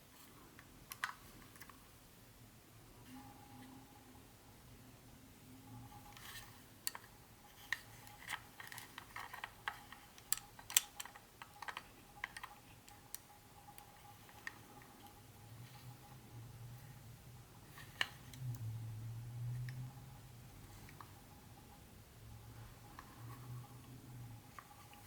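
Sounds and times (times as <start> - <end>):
plastic parts clicking and tapping: 0.6 - 1.8, 6.2 - 15.2.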